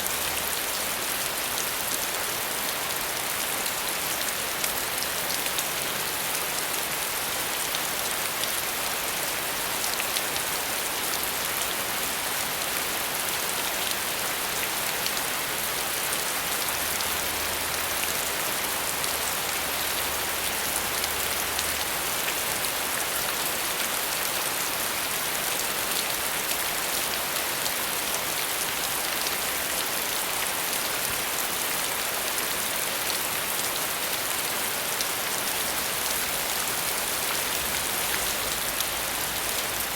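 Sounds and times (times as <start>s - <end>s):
rain pattering on a surface: 0.0s - 39.9s.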